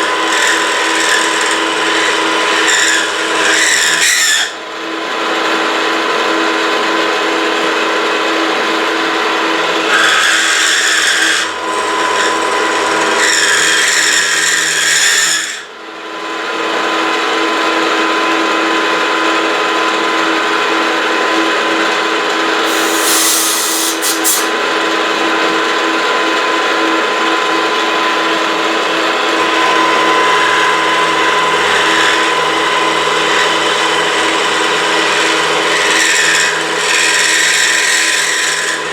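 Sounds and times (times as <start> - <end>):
milling machine cutting metal: 0.0 - 4.5, 9.8 - 15.6, 22.6 - 25.0, 29.1 - 38.9
spindle hum: 29.2 - 38.9.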